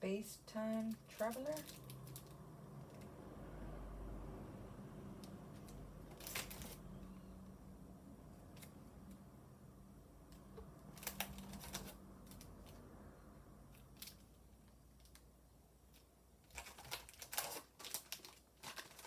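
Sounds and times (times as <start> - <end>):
packaging crinkling: 0.8 - 2.4, 5.6 - 6.8, 16.5 - 19.0.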